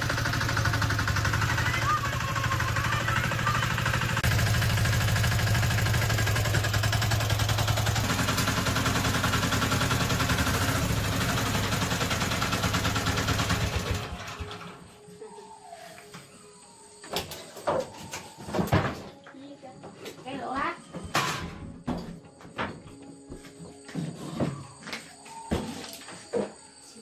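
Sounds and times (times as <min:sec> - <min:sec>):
engine running with fast beat: 0:00.0 - 0:14.4.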